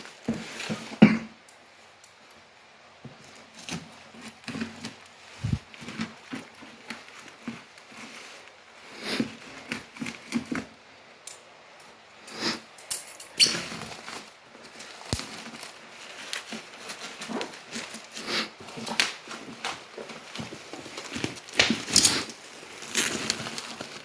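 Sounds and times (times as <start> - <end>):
hands handling packaging: 13.4 - 24.0.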